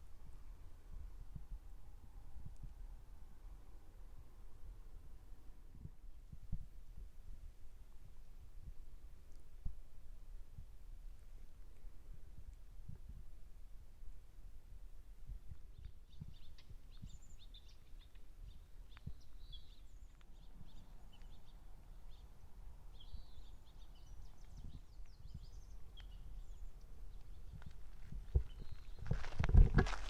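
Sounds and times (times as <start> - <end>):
small birds chirping: 15.3 - 30.0.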